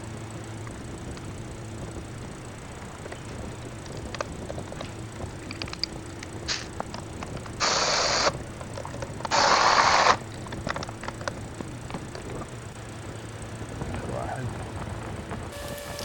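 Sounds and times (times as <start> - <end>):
tools clicking: 3.8 - 7.7
compressed air hissing: 6.0 - 6.8, 7.5 - 10.4, 15.5 - 16.0.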